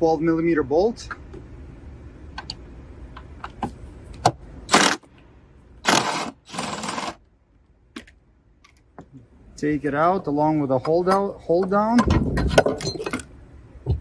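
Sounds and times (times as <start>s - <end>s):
impact driver bursts: 4.7s - 5.0s, 5.8s - 7.2s.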